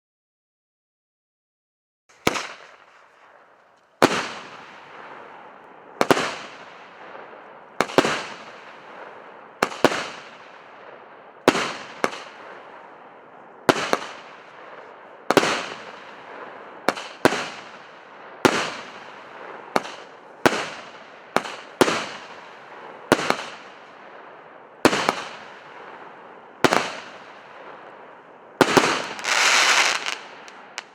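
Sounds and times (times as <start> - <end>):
firework crackle: 2.1 - 7.0, 16.9 - 30.9
firework bangs: 2.1 - 13.0, 13.6 - 30.9.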